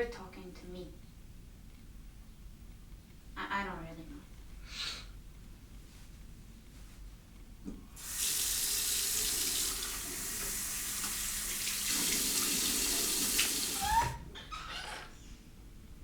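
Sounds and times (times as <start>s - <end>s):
tap running into a sink: 7.7s - 14.2s
short rising squeak: 13.8s - 15.1s.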